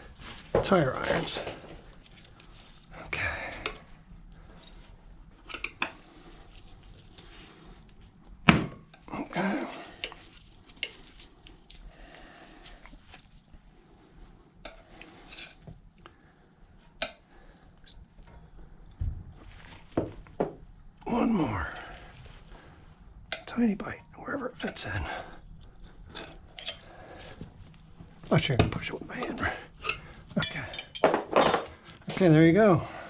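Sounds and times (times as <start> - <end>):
tire irons clinking and scraping: 0.2 - 2.6, 28.3 - 32.4.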